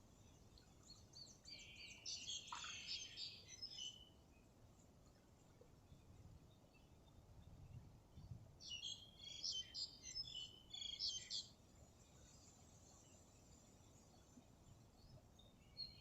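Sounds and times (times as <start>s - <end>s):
faint outdoor background noise: 0.0s - 16.0s
bird chirping: 0.8s - 4.1s, 8.6s - 11.6s.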